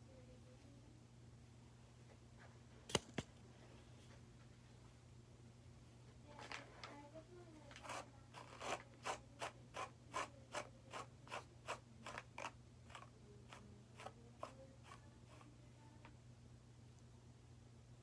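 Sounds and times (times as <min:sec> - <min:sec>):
short scratchy strokes: 0:07.8 - 0:15.6.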